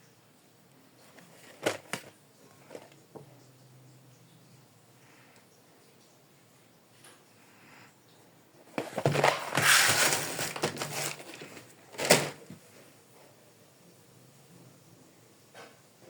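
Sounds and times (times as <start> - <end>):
plastic rustling and clicking: 1.0 - 3.3, 8.6 - 12.7.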